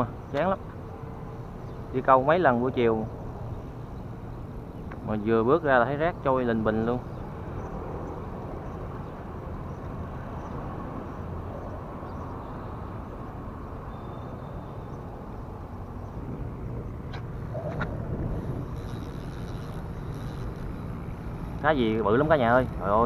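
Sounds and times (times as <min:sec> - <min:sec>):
low engine drone: 0:15.0 - 0:23.0.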